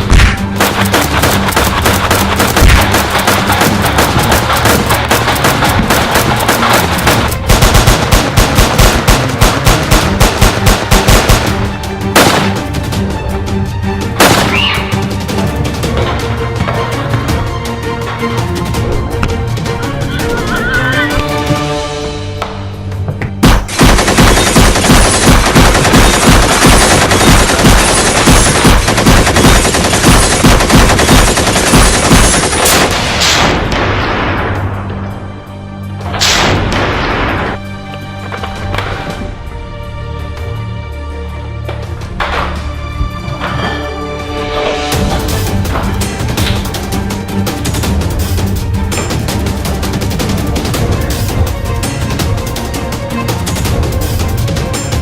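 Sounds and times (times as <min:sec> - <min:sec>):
action music with heavy beat: 0:00.0 - 0:22.6, 0:23.3 - 0:33.8, 0:44.7 - 0:55.0
rapid automatic gunfire: 0:00.6 - 0:11.5, 0:23.4 - 0:33.0
machine-gun firing: 0:00.6 - 0:11.6, 0:23.4 - 0:33.7.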